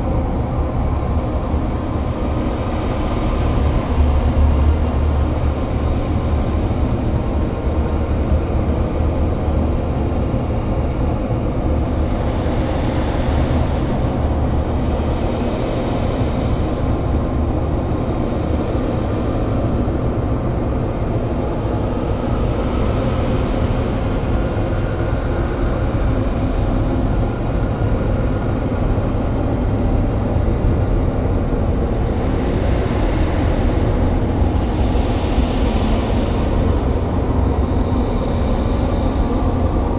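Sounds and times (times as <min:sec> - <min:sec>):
low rumbling drone: 0:28.1 - 0:39.9.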